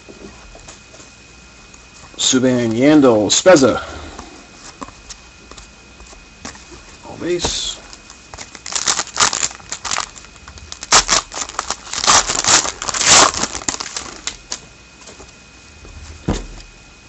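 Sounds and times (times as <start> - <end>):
trading cards and packaging rustling: 4.6 - 14.6.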